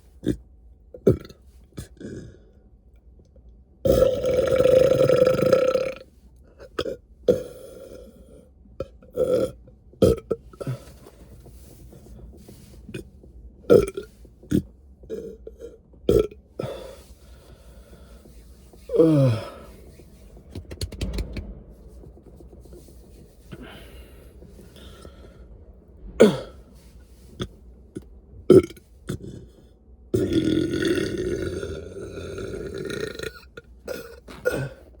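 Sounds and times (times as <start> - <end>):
person burping: 1.0 - 2.4, 3.9 - 6.0, 6.7 - 8.2, 9.1 - 10.9, 13.7 - 17.1, 18.9 - 19.7, 26.2 - 26.6, 28.5 - 29.6, 30.2 - 34.9.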